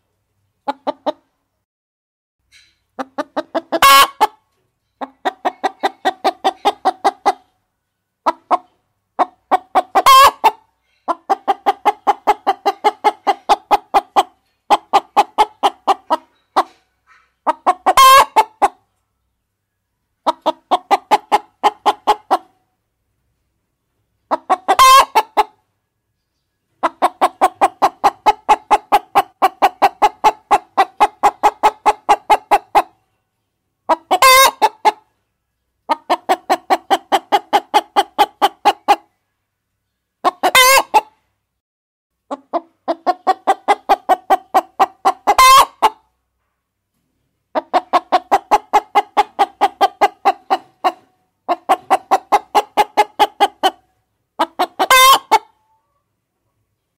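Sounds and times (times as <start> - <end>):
hens clucking rapidly: 3.0 - 7.5, 8.2 - 18.9, 20.2 - 22.6, 24.2 - 25.6, 26.8 - 33.0, 33.8 - 35.1, 35.8 - 39.1, 40.2 - 41.2, 42.3 - 46.1, 47.5 - 55.6.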